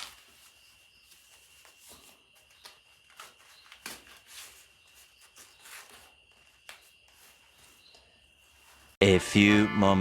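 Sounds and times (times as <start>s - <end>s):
food packaging rustling: 0.0s - 9.0s.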